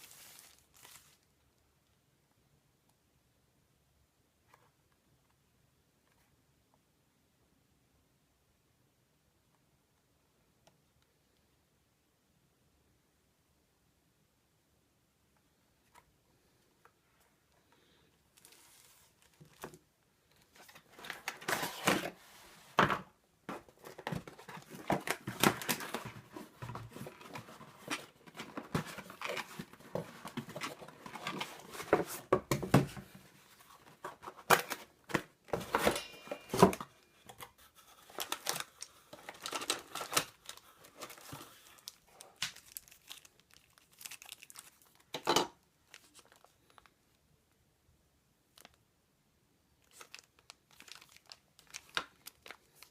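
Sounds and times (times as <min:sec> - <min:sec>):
plastic and paper crinkling: 0:00.0 - 0:01.3, 0:18.3 - 0:45.2, 0:45.8 - 0:47.0, 0:49.8 - 0:52.9.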